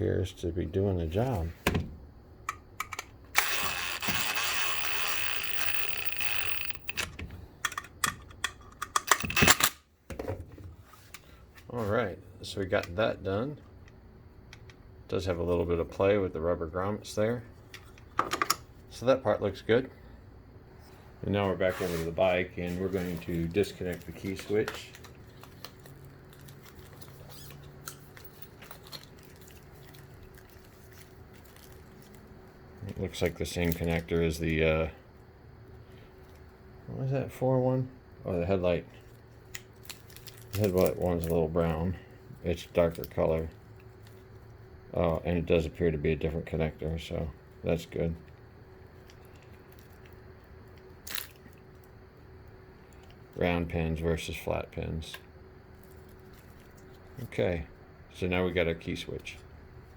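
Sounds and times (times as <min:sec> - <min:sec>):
steady low hum: 0:00.0 - 0:10.1.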